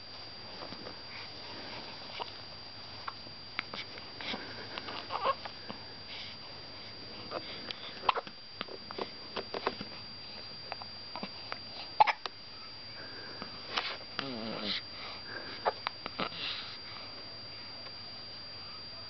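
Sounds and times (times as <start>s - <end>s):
baby hiccupping: 5.1s - 5.4s, 8.0s - 8.3s, 12.0s - 12.3s.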